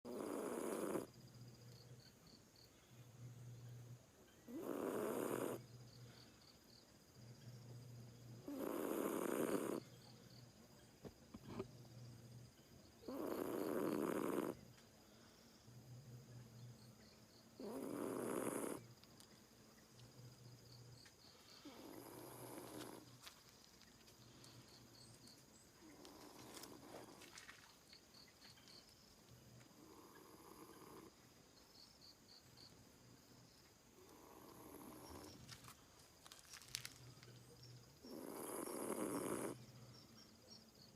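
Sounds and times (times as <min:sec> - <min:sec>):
cat snoring: 0:00.1 - 0:01.1, 0:04.5 - 0:05.6, 0:08.4 - 0:09.9, 0:13.1 - 0:14.6, 0:17.6 - 0:18.9, 0:21.6 - 0:23.0, 0:29.8 - 0:31.1, 0:34.0 - 0:35.3, 0:38.1 - 0:39.6.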